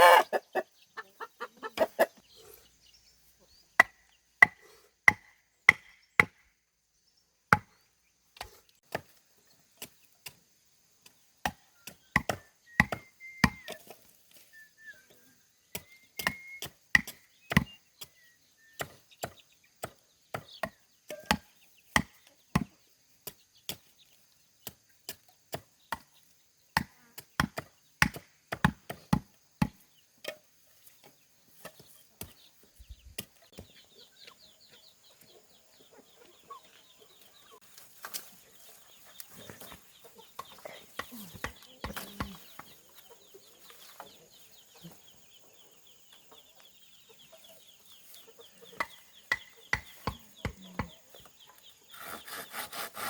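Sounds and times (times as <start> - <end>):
blade chopping wood: 11.4 - 13.8, 15.8 - 17.8, 26.8 - 29.8.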